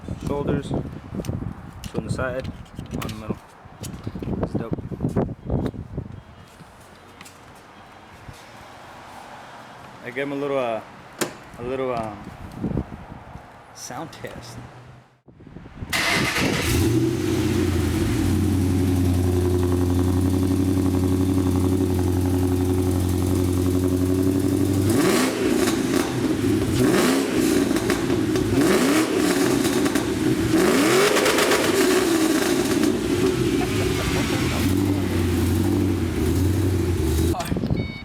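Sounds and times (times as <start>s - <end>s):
car engine idling and revving: 16.0s - 37.4s.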